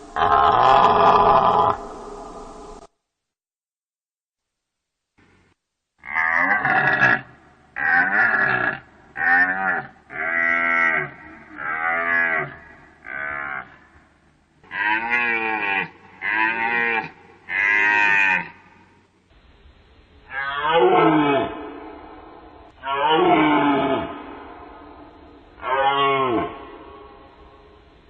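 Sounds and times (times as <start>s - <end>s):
deer calling: 14.6s - 18.9s.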